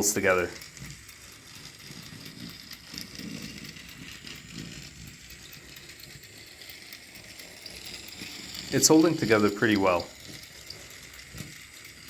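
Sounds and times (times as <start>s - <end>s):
toy train motor whirring: 0.0s - 12.0s.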